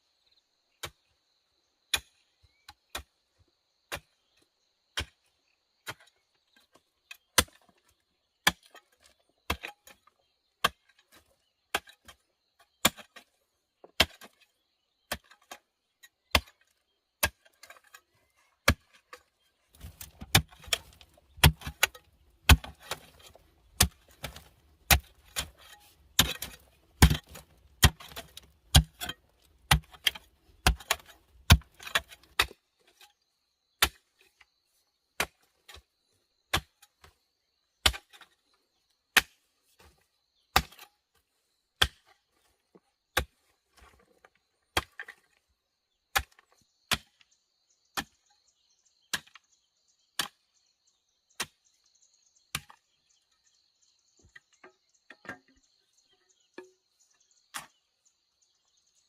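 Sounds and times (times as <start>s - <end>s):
blade chopping wood: 19.8s - 32.6s, 40.5s - 40.9s.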